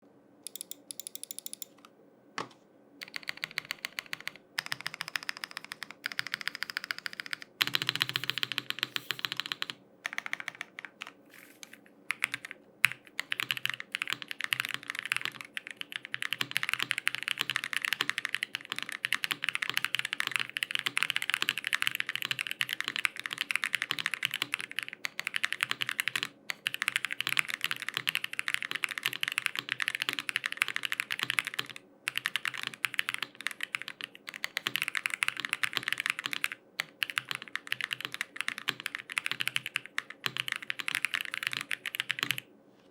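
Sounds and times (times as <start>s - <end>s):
mechanical keyboard keystroke clacks: 0.5s - 1.8s, 12.1s - 42.4s.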